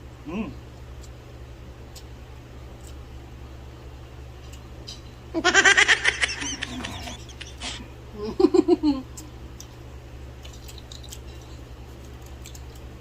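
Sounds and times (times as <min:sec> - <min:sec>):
steady low hum: 0:00.0 - 0:13.0
person laughing: 0:05.4 - 0:09.1.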